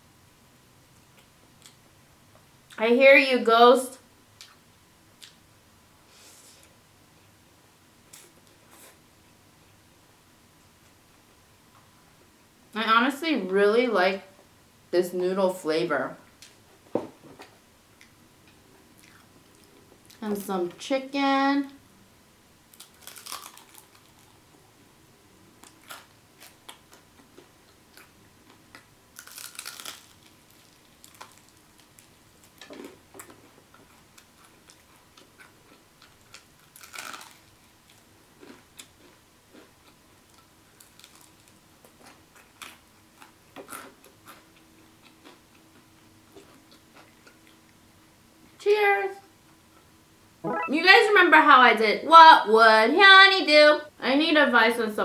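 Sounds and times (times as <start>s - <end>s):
chewing and crunching: 18.0s - 20.2s, 22.7s - 24.4s, 25.6s - 47.7s.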